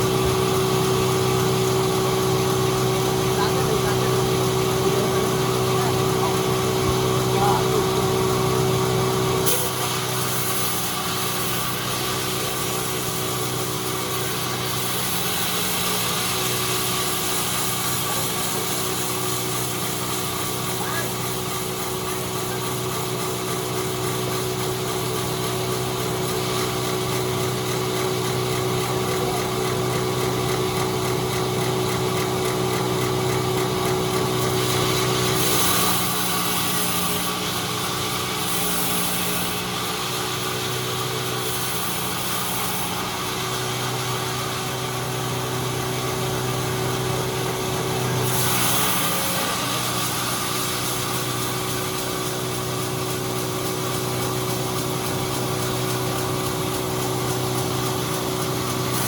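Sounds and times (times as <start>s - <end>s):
sawmill engine running: 0.0s - 59.0s.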